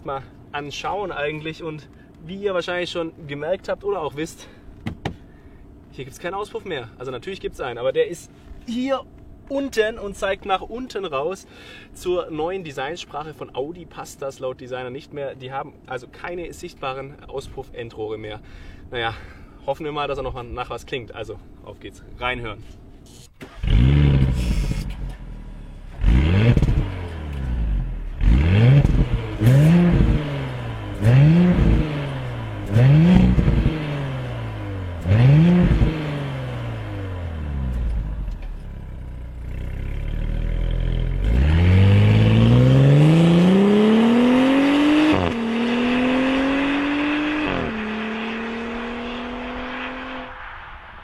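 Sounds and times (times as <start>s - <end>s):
car engine revving and accelerating: 23.5s - 25.3s, 25.9s - 38.2s, 39.5s - 50.6s.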